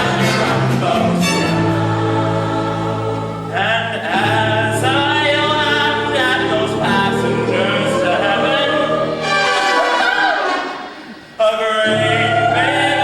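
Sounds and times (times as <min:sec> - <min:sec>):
chorus singing show tune: 0:00.0 - 0:13.0.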